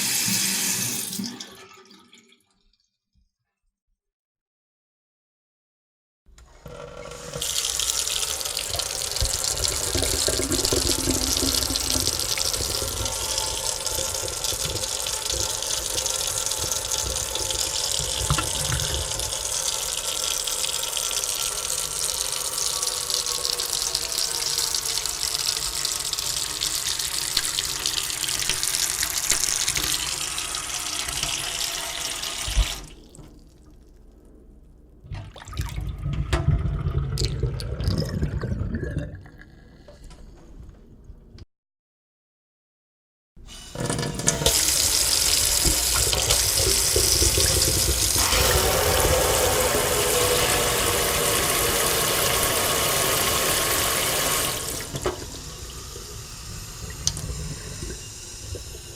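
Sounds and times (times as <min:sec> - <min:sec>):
water pouring into sink: 0:06.7 - 0:34.0, 0:35.1 - 0:39.9, 0:43.6 - 0:58.9
faucet knock: 0:08.7 - 0:19.4.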